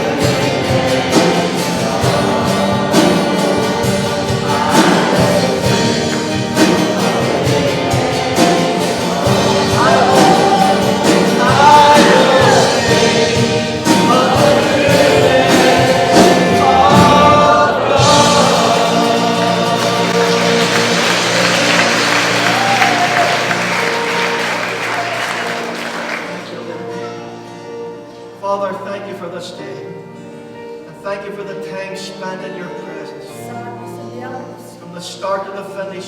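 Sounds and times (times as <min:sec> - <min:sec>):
instrumental accompaniment with beat: 0:00.0 - 0:26.5
congregation singing a hymn: 0:00.0 - 0:27.5.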